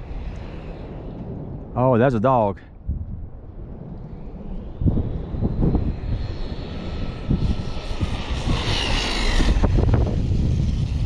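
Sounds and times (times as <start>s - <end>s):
wind rumbling on microphone: 0.0s - 11.0s
electric toy truck motor whine: 7.7s - 11.0s.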